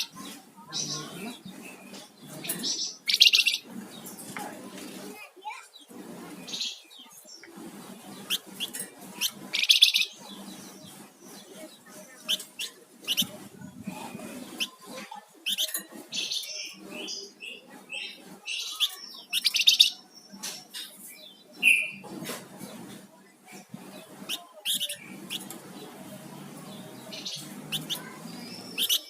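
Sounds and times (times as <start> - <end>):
songbird singing: 0.0 - 4.6, 8.1 - 22.1, 23.7 - 29.0.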